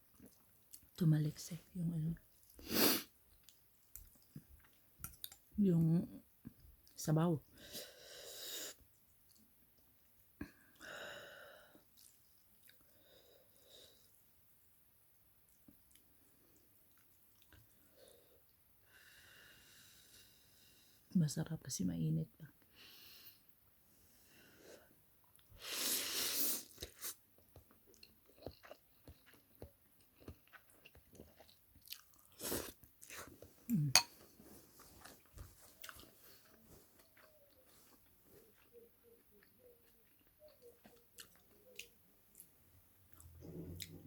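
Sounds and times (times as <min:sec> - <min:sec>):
chewing with mouth clicks: 0:00.0 - 0:01.0, 0:03.2 - 0:05.5, 0:11.8 - 0:12.9, 0:15.5 - 0:17.8, 0:26.6 - 0:33.7, 0:34.7 - 0:44.0.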